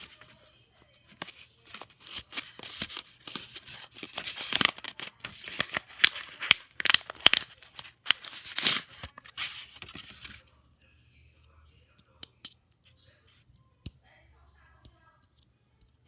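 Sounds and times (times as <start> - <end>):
paper crinkling and tearing: 1.1 - 10.4.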